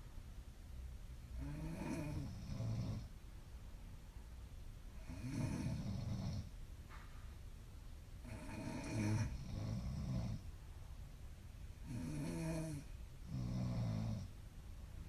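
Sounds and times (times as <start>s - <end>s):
woman snoring: 1.4s - 3.1s, 5.0s - 6.5s, 8.2s - 10.4s, 11.8s - 14.3s.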